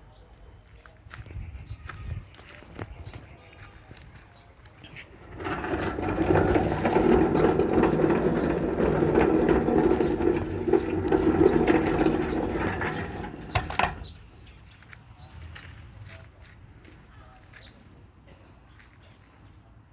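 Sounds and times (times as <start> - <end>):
metal gate rolling on track: 5.1 - 14.2
gate knocking to a stop: 5.3 - 14.1.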